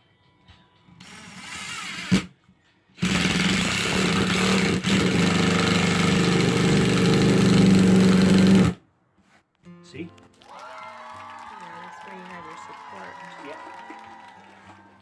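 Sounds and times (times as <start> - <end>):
power screwdriver driving screw: 1.0 - 2.3, 3.0 - 8.8.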